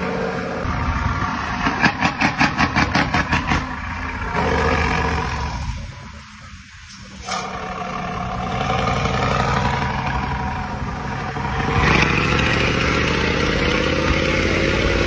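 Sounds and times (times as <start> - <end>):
bus diesel engine running: 0.0 - 15.0
hiss: 5.0 - 8.4.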